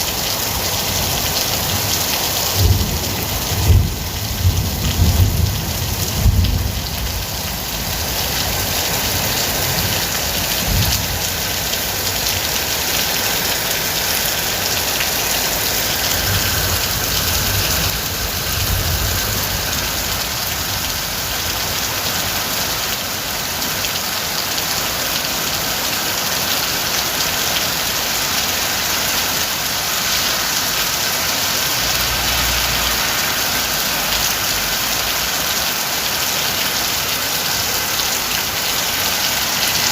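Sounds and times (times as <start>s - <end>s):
heavy rain falling: 0.0s - 39.9s
distant thunder rumbling: 2.6s - 7.8s.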